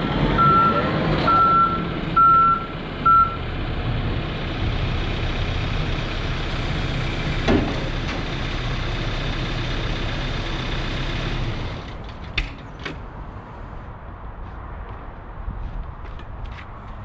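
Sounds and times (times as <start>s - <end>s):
diesel engine running: 0.0s - 12.7s
sharp clunk: 7.4s - 8.2s.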